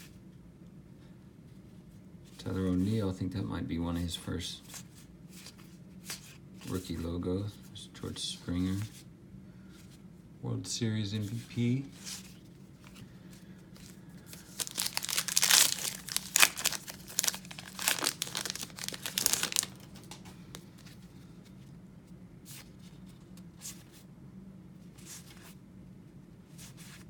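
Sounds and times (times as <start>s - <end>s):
faint handling sounds: 4.6s - 10.2s, 11.1s - 24.1s
wrapper tearing and crinkling: 13.8s - 20.6s.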